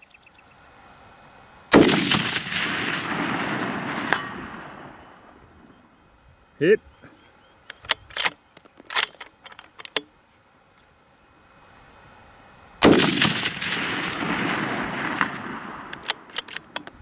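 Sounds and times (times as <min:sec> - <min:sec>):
rifle shot with rolling echo: 0:01.7 - 0:06.0, 0:12.8 - 0:17.0
rifle bolt clicks: 0:07.7 - 0:10.1, 0:15.2 - 0:17.0.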